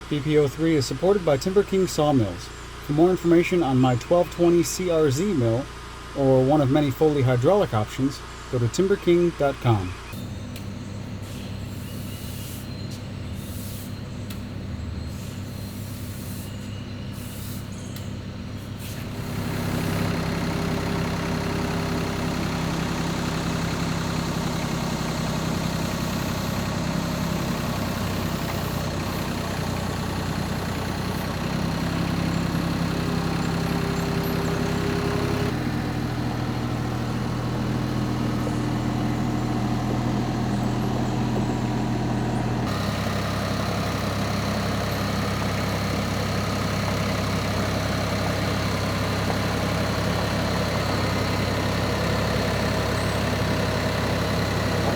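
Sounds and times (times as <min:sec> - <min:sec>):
engine running: 0:00.0 - 0:54.9.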